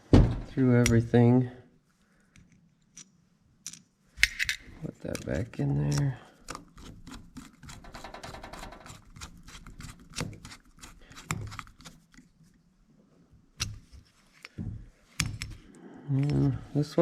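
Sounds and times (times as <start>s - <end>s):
metal parts clicking and tapping: 2.3s - 12.0s, 14.4s - 15.6s.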